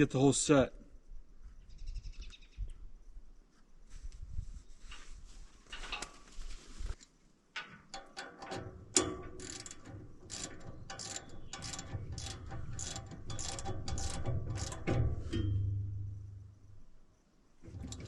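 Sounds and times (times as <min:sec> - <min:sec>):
ratchet wrench clicking: 0:08.0 - 0:15.5.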